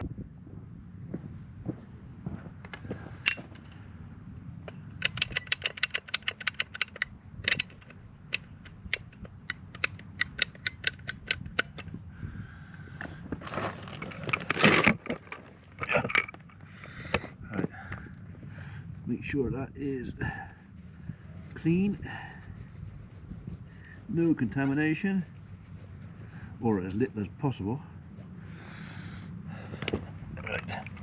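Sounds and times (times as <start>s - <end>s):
hand tools clicking: 3.2s - 3.8s, 4.7s - 12.0s, 13.8s - 17.2s
rustle of handling: 12.9s - 18.5s, 20.6s - 28.9s.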